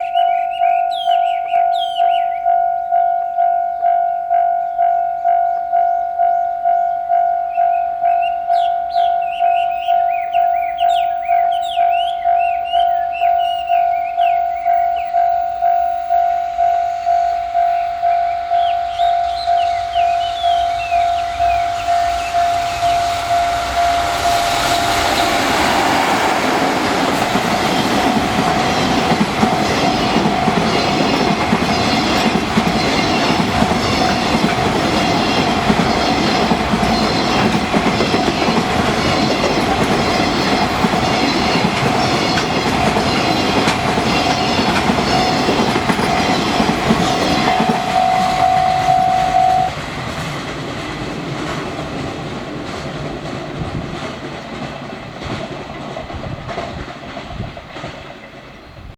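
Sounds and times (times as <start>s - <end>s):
level crossing alarm ringing: 0.0s - 50.0s
train wheels clacking on rails: 0.0s - 58.9s.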